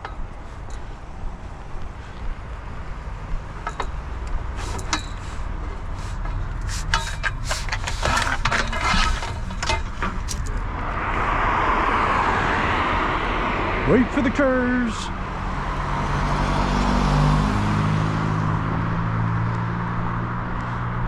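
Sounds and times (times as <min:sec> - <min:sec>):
scrap metal knocks and clanks: 0:03.5 - 0:10.7.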